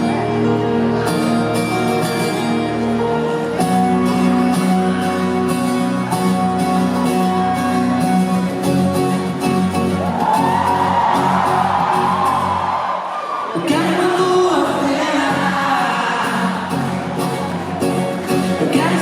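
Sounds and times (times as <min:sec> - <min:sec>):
guitar strumming chords: 0:00.0 - 0:12.8, 0:13.6 - 0:19.0.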